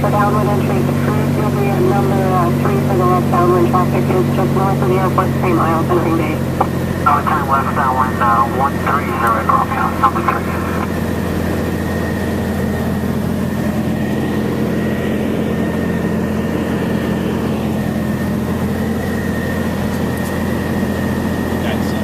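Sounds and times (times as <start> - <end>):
aircraft engine and propeller drone: 0.0 - 22.0.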